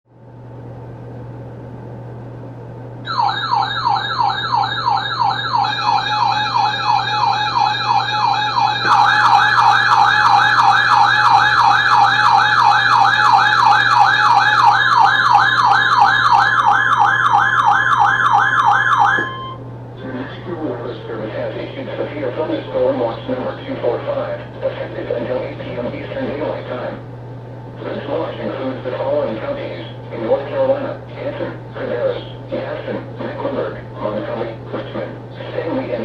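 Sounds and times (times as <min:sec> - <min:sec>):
steady low hum: 0:00.1 - 0:36.0
electronic warbling siren: 0:03.0 - 0:24.1
steady high tone: 0:03.0 - 0:26.6.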